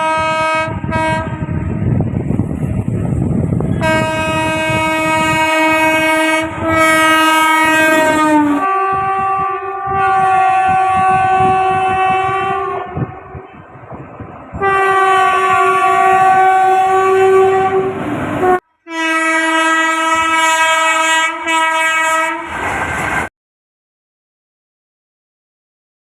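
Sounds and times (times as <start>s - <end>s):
locomotive horn blasts: 0.0s - 1.8s, 3.7s - 13.8s, 14.6s - 22.6s.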